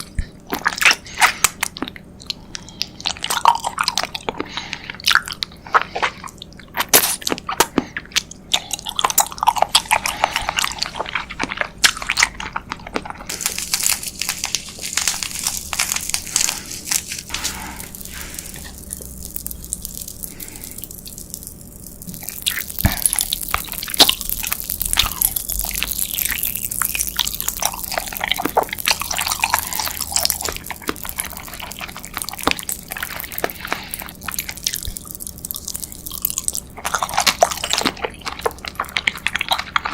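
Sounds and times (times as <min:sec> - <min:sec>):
crunching and chewing sweets: 0:00.0 - 0:39.9
dense crackling: 0:13.3 - 0:39.9.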